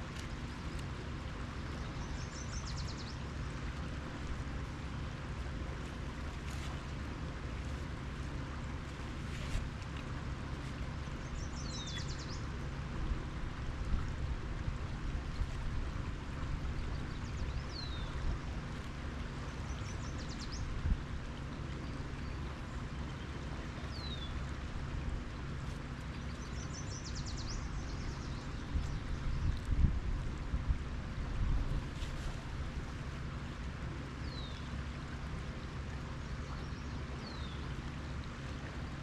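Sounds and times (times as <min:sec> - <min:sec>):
river water rushing: 0:00.0 - 0:39.0
wind on microphone: 0:20.6 - 0:21.1, 0:28.3 - 0:32.9.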